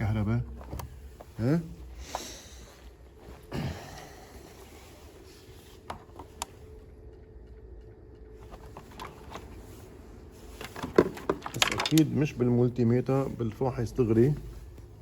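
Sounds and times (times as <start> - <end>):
low steady hum: 0.0 - 15.0
faint clicks and taps: 5.8 - 9.7.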